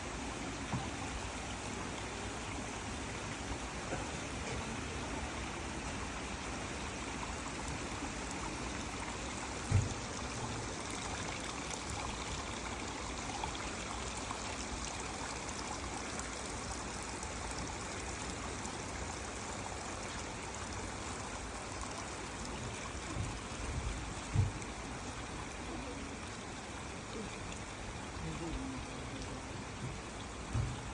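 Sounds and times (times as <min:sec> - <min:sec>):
stream of water running: 0:00.0 - 0:30.9
low thump: 0:09.6 - 0:10.0, 0:24.3 - 0:24.6, 0:30.5 - 0:30.8.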